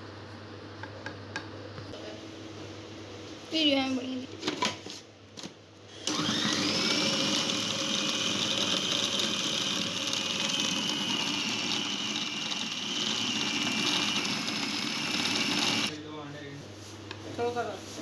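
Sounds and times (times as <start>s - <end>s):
kitchen grinder motor running: 6.0s - 15.9s.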